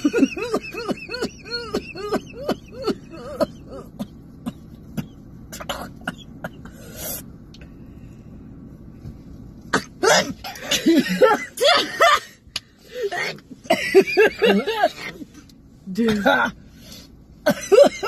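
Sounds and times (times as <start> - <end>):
person coughing: 0.0 - 7.2, 9.7 - 12.4, 16.0 - 16.6, 17.4 - 18.0.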